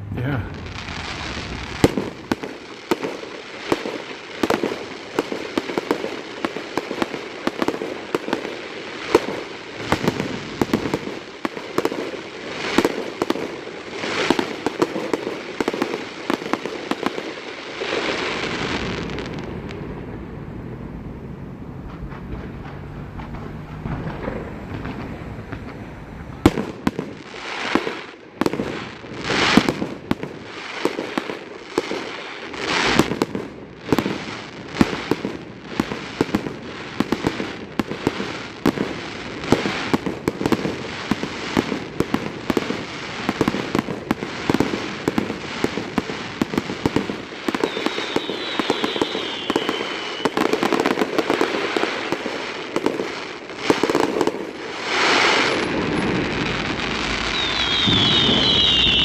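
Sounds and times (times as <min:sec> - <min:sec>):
fireworks bangs and crackling: 0:00.0 - 0:59.0
fireworks hissing: 0:00.0 - 0:59.0
falling whistle: 0:47.6 - 0:50.6, 0:55.0 - 0:59.0.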